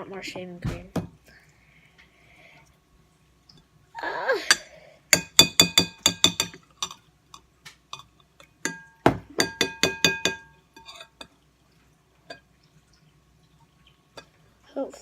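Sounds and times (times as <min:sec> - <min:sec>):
spoon clinking against glass bowl: 0:05.2 - 0:07.0, 0:07.9 - 0:11.3
spoon scraping glass bowl: 0:07.9 - 0:11.3.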